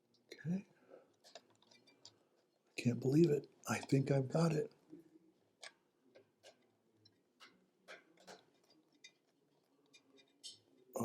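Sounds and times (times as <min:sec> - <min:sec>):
faint clicks and light taps: 0:04.7 - 0:11.0.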